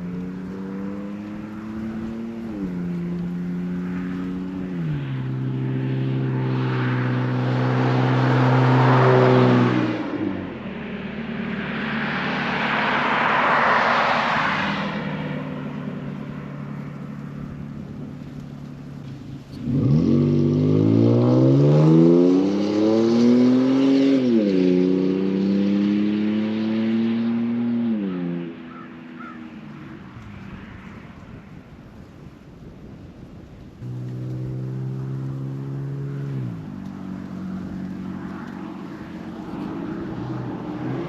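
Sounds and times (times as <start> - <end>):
road noise: 0.0 - 41.0
truck exhaust accelerating: 33.6 - 41.0.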